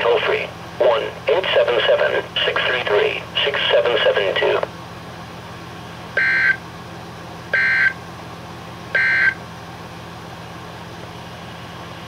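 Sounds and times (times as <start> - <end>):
steady low hum: 0.0 - 12.0
two-tone digital squawks: 6.2 - 6.6, 7.6 - 7.9, 9.0 - 9.4.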